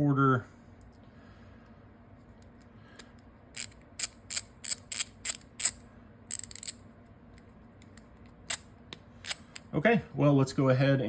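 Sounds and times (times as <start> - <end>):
ratchet wrench clicking: 3.6 - 6.8.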